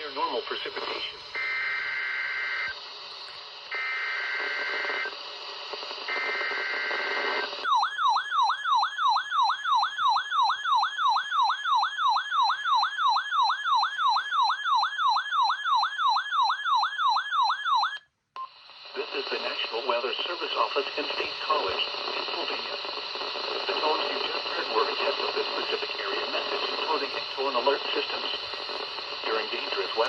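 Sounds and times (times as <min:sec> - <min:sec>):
radio static: 0:00.0 - 0:01.6, 0:02.6 - 0:07.6, 0:18.4 - 0:30.0.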